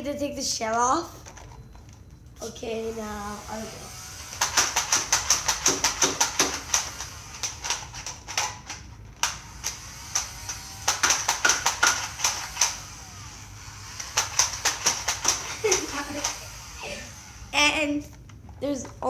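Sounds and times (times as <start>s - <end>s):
sharp plastic clicks: 4.3s - 12.8s, 14.0s - 16.4s.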